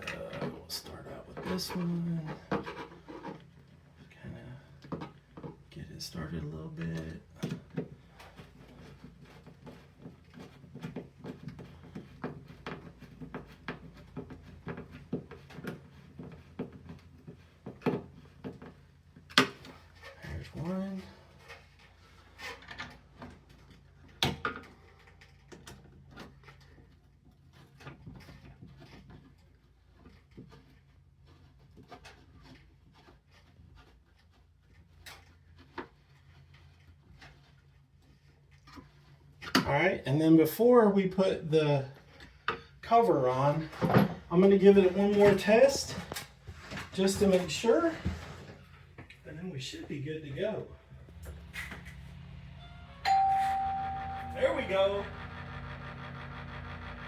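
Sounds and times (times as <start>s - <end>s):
low steady hum: 49.0s - 57.0s.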